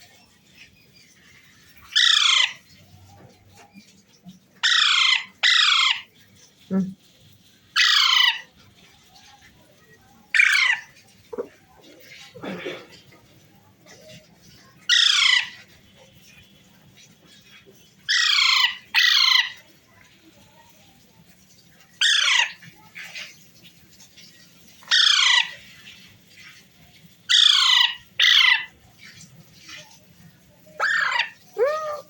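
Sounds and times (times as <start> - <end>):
parrot squawking: 1.1 - 3.9, 4.6 - 6.2, 7.7 - 8.6, 10.3 - 12.3, 13.9 - 16.4, 17.0 - 19.7, 22.0 - 23.4, 24.8 - 26.6, 27.3 - 29.9, 30.6 - 32.0.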